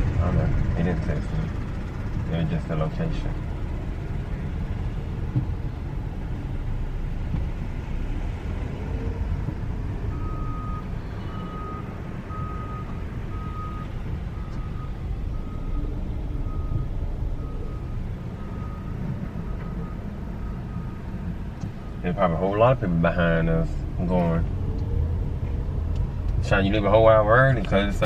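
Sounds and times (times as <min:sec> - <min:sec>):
vehicle engine rumble: 0:00.0 - 0:28.0.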